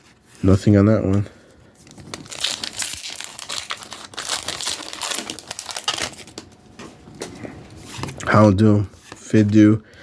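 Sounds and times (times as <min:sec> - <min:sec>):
foil wrapper crinkling and tearing: 0:01.9 - 0:06.5.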